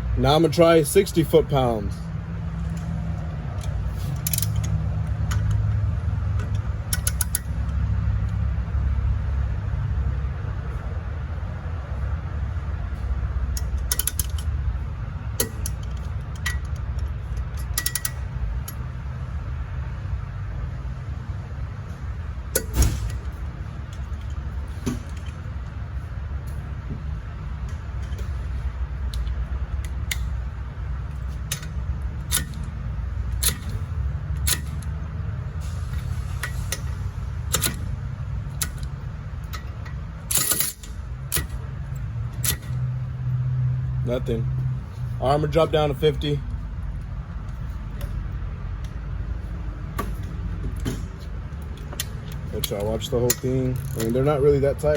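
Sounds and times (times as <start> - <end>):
steady low hum: 0.0 - 54.9
steady low rumble: 0.0 - 54.9
ratchet clicking and rattling: 2.5 - 8.5, 13.0 - 19.3, 21.9 - 26.8, 27.4 - 43.8, 44.6 - 54.9.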